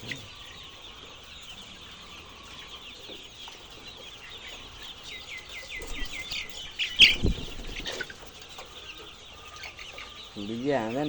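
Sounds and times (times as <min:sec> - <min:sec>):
chickens chirping: 0:00.0 - 0:11.0.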